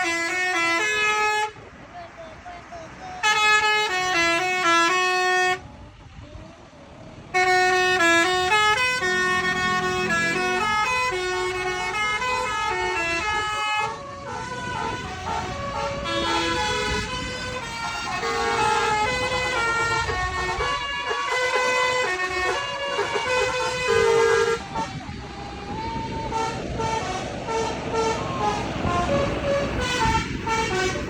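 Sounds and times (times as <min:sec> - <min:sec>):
multi-tone bus horn melody: 0:00.0 - 0:01.9, 0:02.9 - 0:05.7, 0:07.3 - 0:31.0.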